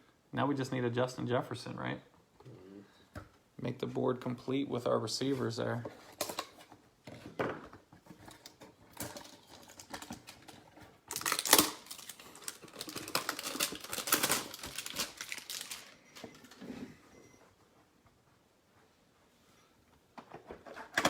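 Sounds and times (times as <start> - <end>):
foil wrapper crinkling: 8.3 - 16.6.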